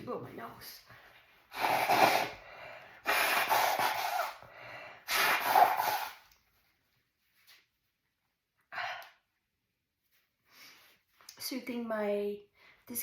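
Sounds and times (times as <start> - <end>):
woman blowing her nose: 1.5 - 6.3.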